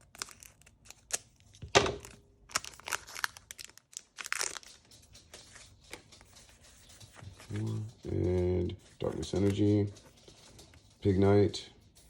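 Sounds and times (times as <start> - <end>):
foil wrapper crinkling and tearing: 0.0 - 6.1.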